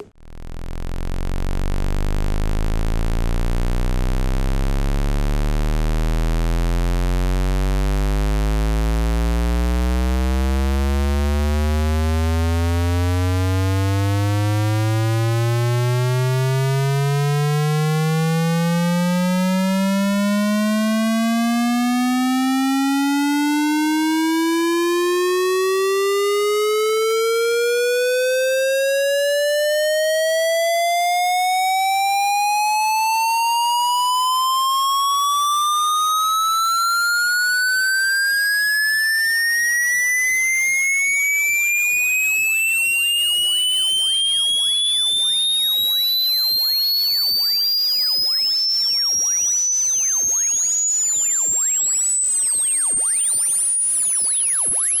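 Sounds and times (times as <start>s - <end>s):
electronic tone rising in pitch: 0.0s - 55.0s.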